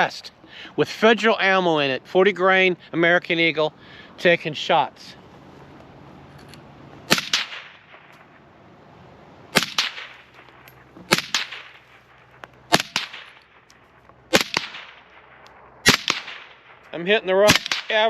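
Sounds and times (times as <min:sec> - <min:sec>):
suppressed pistol shots: 0:07.1 - 0:08.3, 0:09.5 - 0:16.9, 0:17.5 - 0:18.0.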